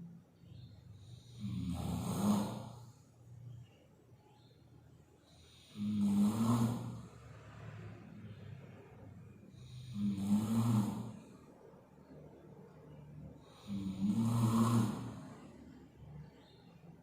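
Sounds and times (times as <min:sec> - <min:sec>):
quiet breathing: 0:00.0 - 0:17.0
person snoring loudly: 0:01.2 - 0:02.8, 0:05.5 - 0:07.1, 0:09.6 - 0:11.3, 0:13.4 - 0:15.4.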